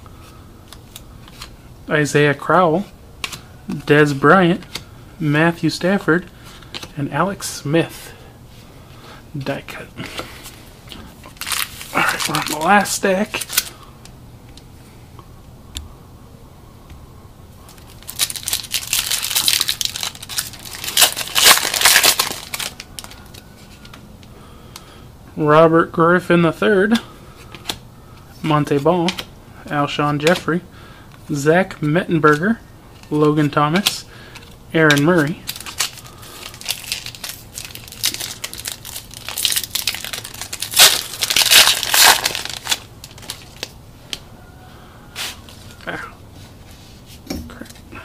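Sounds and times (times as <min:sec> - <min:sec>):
plastic wrapper crinkling: 0:11.2 - 0:13.7, 0:17.7 - 0:23.8, 0:34.9 - 0:43.8.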